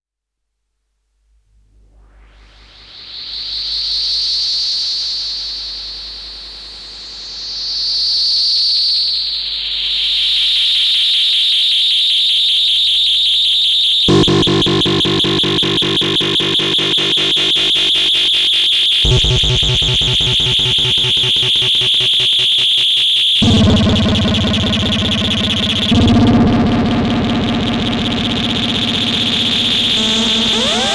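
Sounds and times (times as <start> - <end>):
high electronic whine: 14.1 - 30.9
low pulsing drone: 14.1 - 30.9.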